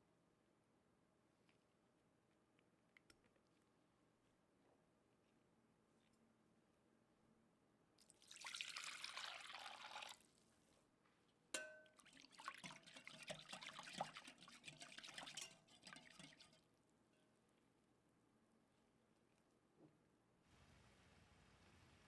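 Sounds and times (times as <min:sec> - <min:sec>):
liquid pouring into a dish: 0:08.0 - 0:10.4, 0:11.9 - 0:16.7
sharp clink: 0:11.6 - 0:11.9.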